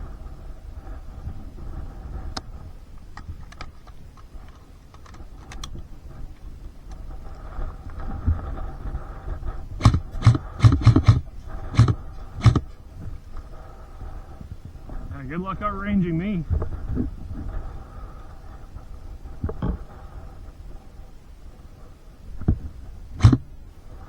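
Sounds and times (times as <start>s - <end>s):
faint steady hum: 0.0s - 24.0s
sharp thumps and knocks: 9.8s - 11.2s, 11.8s - 12.7s, 23.2s - 23.5s
light clicks: 23.2s - 23.5s.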